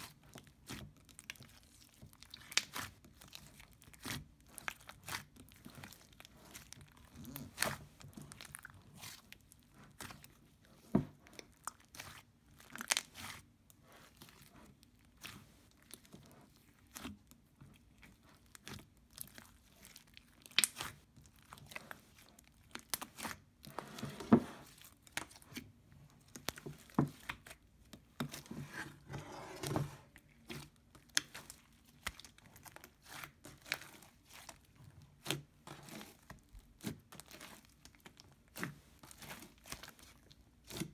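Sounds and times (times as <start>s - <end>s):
crackly slime squelches: 0.0s - 24.0s, 24.6s - 29.2s, 30.0s - 40.9s
slime squishing and popping: 0.4s - 9.2s, 18.4s - 21.8s.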